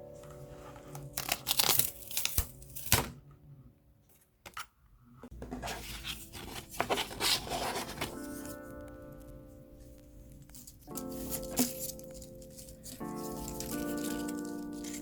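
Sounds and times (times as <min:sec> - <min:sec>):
paper rustling and tapping: 0:05.3 - 0:08.9, 0:10.4 - 0:15.0.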